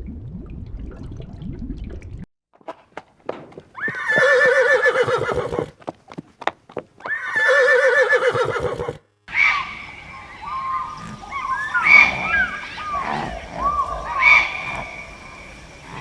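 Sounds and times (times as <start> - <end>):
horse whinnying: 3.8 - 5.8, 7.1 - 9.6.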